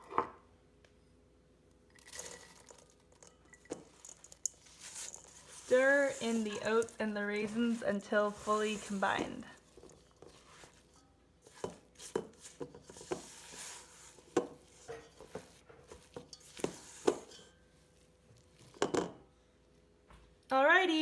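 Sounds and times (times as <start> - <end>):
utensil stirring thick dough: 2.2 - 19.1
utensil knocking and scraping bowl: 3.6 - 17.6, 18.4 - 19.2.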